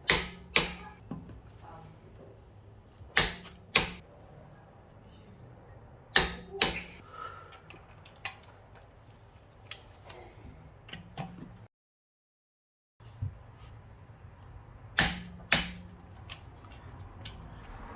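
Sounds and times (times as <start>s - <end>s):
sharp metallic clicks: 0.0s - 1.0s, 3.1s - 4.0s, 6.1s - 7.0s, 14.9s - 17.5s
hand tools clicking and tapping: 0.0s - 1.4s, 3.0s - 4.1s, 6.1s - 11.6s, 15.0s - 17.8s.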